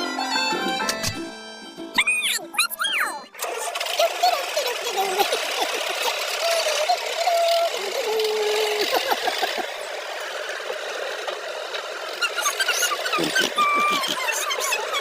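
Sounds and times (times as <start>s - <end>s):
small electric motor whirring: 3.4s - 15.0s.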